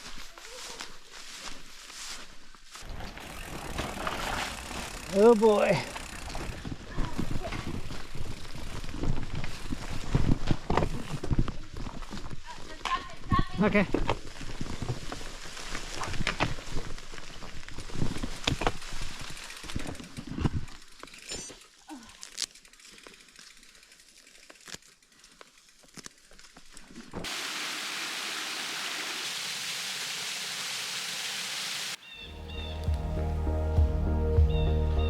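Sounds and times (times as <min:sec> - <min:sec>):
brush crackling and scraping: 0:00.0 - 0:27.3
water rushing: 0:27.2 - 0:33.1.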